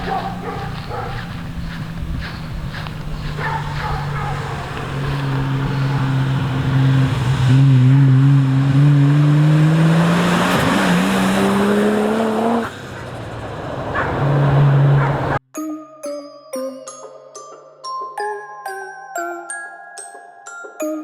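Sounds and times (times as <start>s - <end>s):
car engine accelerating: 0.0s - 15.4s.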